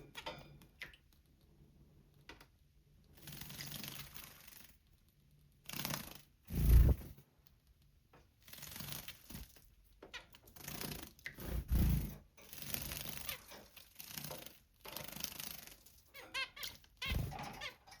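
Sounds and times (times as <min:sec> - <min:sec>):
bird splashing in water bath: 0:03.1 - 0:04.7, 0:08.4 - 0:09.6, 0:12.6 - 0:15.9.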